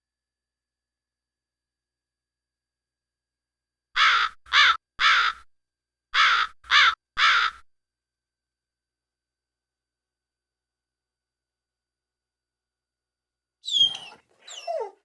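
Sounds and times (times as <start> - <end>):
crow cawing: 4.0 - 5.4, 6.2 - 7.6.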